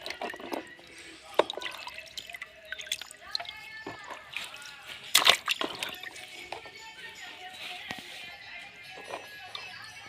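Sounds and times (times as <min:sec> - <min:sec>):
water dripping and splashing: 0:00.0 - 0:06.3.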